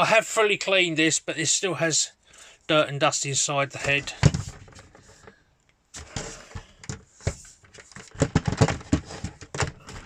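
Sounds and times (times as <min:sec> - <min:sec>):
plastic knocking: 0:06.6 - 0:10.0.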